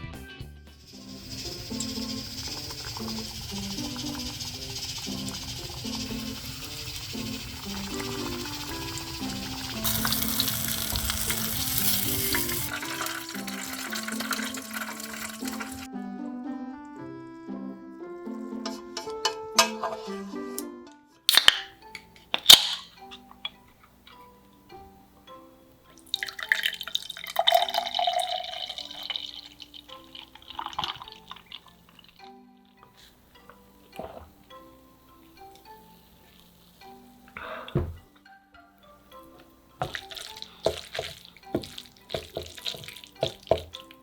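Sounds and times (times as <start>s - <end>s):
simple background melody: 0.0s - 44.0s
soft background music: 0.0s - 44.0s
food sizzling in hot oil: 0.7s - 15.9s, 26.1s - 31.9s, 39.8s - 44.0s
wet liquid sound: 1.2s - 15.9s, 39.8s - 44.0s.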